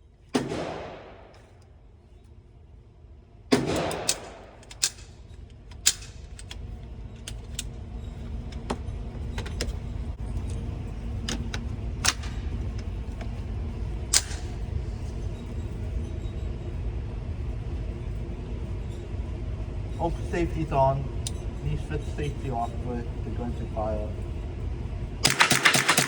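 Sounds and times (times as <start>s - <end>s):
gunshots: 0.4s - 1.3s, 3.5s - 4.6s, 25.2s - 26.0s.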